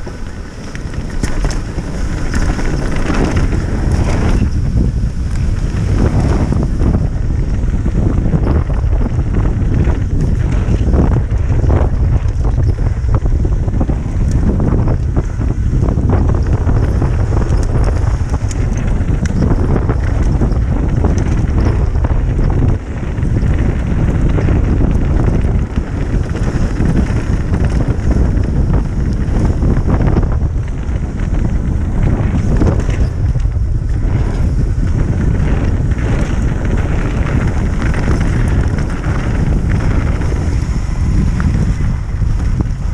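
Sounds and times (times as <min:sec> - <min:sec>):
wind buffeting microphone: 0:00.0 - 0:42.9.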